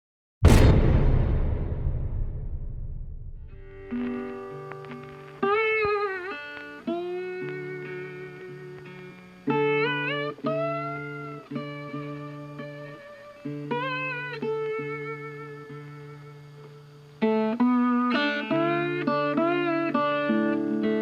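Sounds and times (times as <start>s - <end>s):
guitar music with bent notes: 3.7s - 21.0s.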